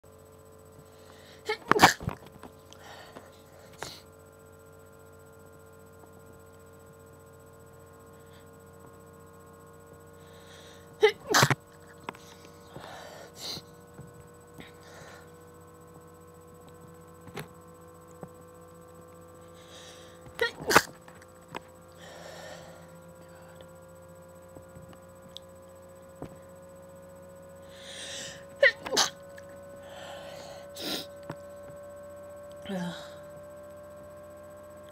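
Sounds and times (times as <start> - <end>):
person sneezing: 1.4 - 2.2, 11.0 - 11.6, 20.4 - 21.0, 27.9 - 29.2
breathy intake: 22.0 - 23.6, 27.7 - 29.2, 29.8 - 31.2.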